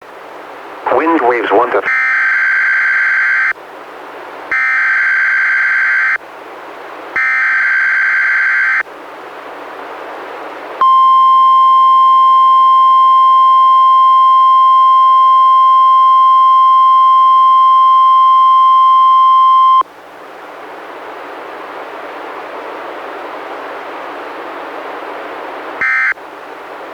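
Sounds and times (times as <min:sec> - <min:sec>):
radio hiss: 0:00.8 - 0:01.9
steady warning alarm tone: 0:04.5 - 0:06.2, 0:07.2 - 0:08.8, 0:10.8 - 0:19.8, 0:25.8 - 0:26.2.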